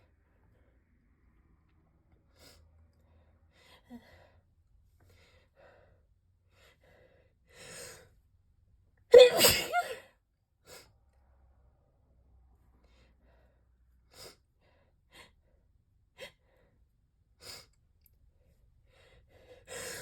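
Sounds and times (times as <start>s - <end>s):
person sneezing: 9.2s - 10.0s.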